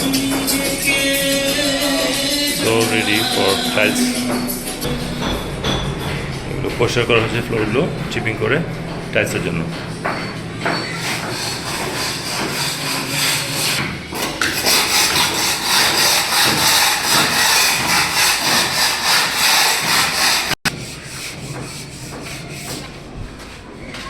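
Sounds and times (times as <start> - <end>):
quiet rasping: 0.0 - 23.1
hand tool scraping concrete: 9.3 - 23.0.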